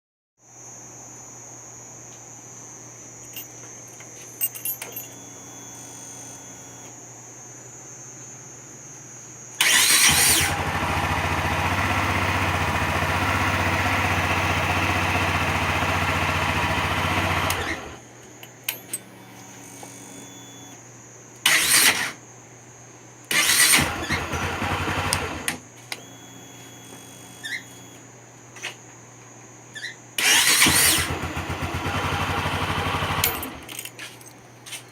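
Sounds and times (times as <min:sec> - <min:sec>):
motorcycle starter cranking: 0:09.6 - 0:18.0, 0:21.5 - 0:22.2, 0:23.3 - 0:25.5, 0:30.2 - 0:33.8.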